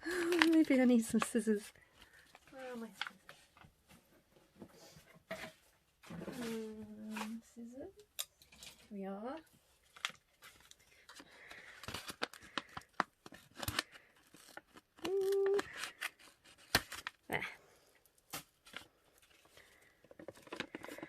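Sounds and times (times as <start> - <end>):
packaging rustling: 0.0 - 3.6, 9.8 - 17.3, 18.5 - 21.0
scissors snipping packaging: 11.8 - 17.2
person humming: 15.0 - 15.7.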